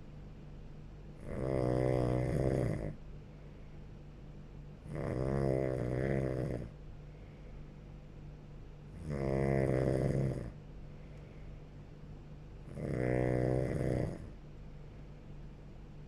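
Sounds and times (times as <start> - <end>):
person snoring: 1.2 - 3.0, 4.9 - 6.7, 9.0 - 10.6, 12.7 - 14.4.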